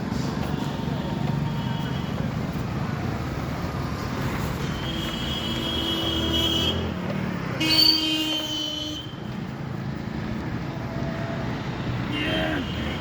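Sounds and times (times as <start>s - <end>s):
road traffic passing: 0.0s - 13.0s.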